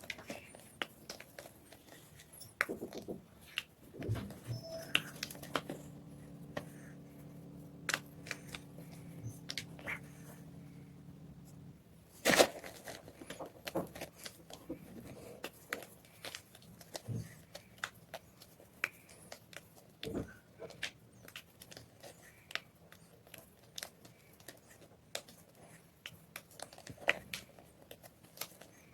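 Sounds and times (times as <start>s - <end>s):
low steady hum: 0.0s - 18.2s.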